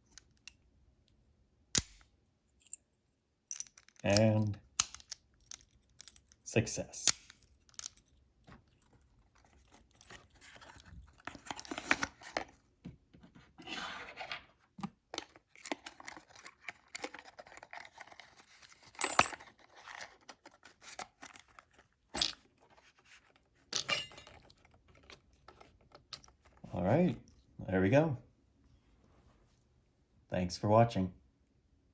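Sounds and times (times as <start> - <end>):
padlock and keys clicking: 1.8 - 2.8, 3.5 - 6.4, 7.0 - 8.8.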